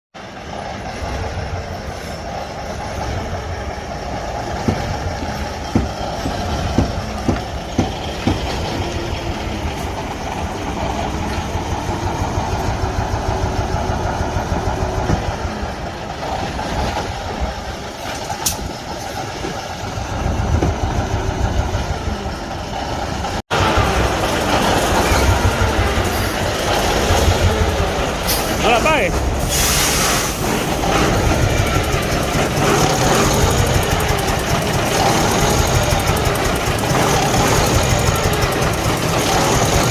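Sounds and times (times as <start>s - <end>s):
diesel engine pulsing: 0.2s - 39.9s.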